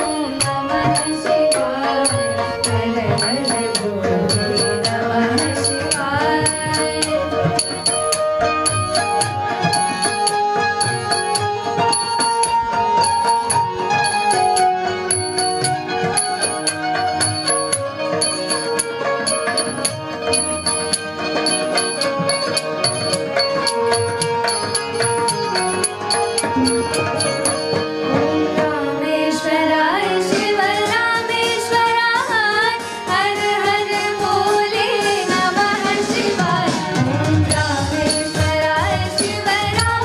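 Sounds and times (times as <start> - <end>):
small metallic strikes: 0.0 - 28.7
held melodic notes: 0.0 - 40.0
tabla drumming: 0.0 - 40.0
steady held note: 19.7 - 28.6.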